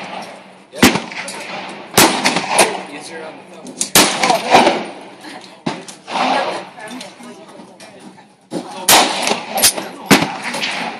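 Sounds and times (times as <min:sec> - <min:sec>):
voices: 0:02.5 - 0:10.9
handgun shots echoing: 0:08.9 - 0:10.9.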